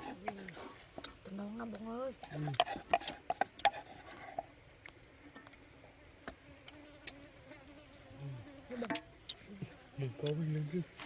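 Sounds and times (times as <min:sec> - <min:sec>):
insect buzzing: 0:05.9 - 0:11.0.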